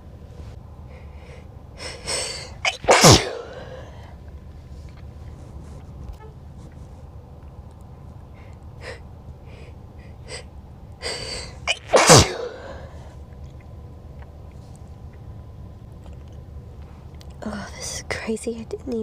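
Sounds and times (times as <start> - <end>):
faint short breaths: 0.8 - 2.6, 3.4 - 5.7, 8.3 - 11.7
noisy intake of breath: 0.8 - 4.8, 8.3 - 13.2
person sneezing: 1.8 - 4.0, 11.1 - 13.0.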